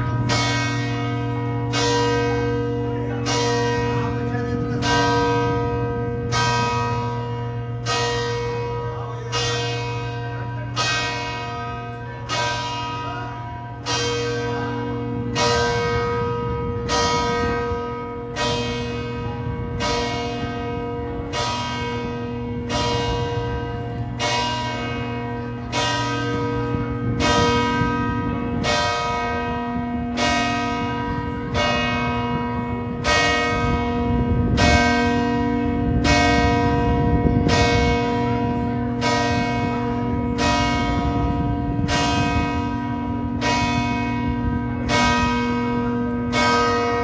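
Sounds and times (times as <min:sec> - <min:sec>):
large church bells tolling: 0:00.0 - 0:47.0.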